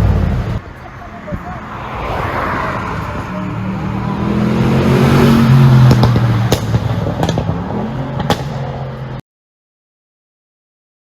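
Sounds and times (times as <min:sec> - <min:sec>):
car engine revving: 0:00.0 - 0:09.2
exhaust pops and crackles: 0:05.8 - 0:08.7.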